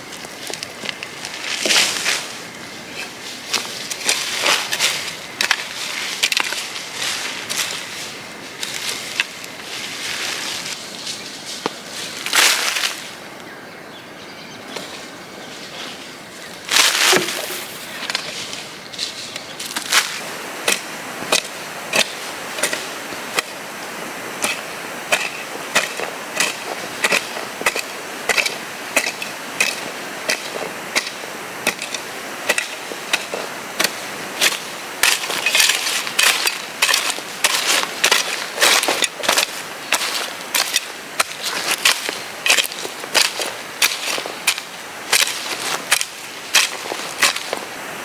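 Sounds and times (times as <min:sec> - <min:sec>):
hand tool striking: 0:17.0 - 0:17.8, 0:20.7 - 0:23.6, 0:24.4 - 0:47.6.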